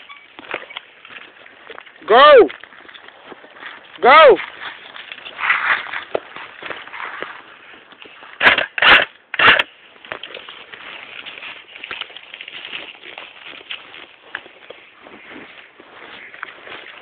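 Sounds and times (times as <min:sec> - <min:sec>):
footsteps crunching dry leaves: 0:00.0 - 0:08.4, 0:09.2 - 0:17.0
rustling scrapes near microphone: 0:02.6 - 0:08.4, 0:09.9 - 0:17.0.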